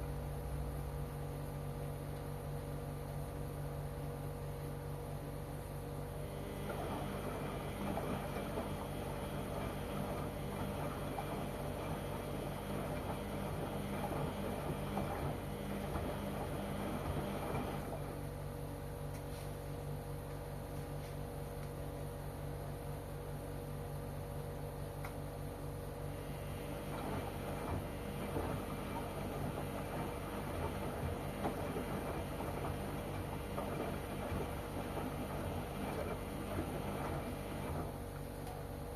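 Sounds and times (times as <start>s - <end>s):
washing machine motor hum: 0.0s - 38.9s
clothes and water churning in drum: 6.1s - 18.4s, 26.1s - 38.9s.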